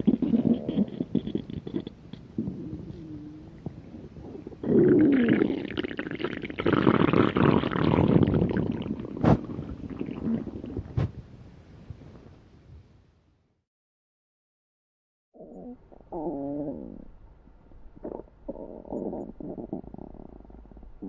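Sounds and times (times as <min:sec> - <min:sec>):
stomach growling: 0:00.0 - 0:11.2, 0:15.4 - 0:17.1, 0:18.0 - 0:21.0.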